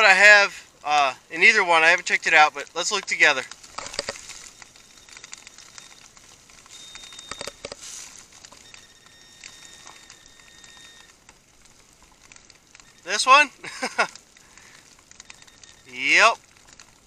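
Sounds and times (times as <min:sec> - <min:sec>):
light rain pattering: 0:00.0 - 0:17.0
metal detector high tone: 0:06.7 - 0:08.0, 0:08.6 - 0:11.1.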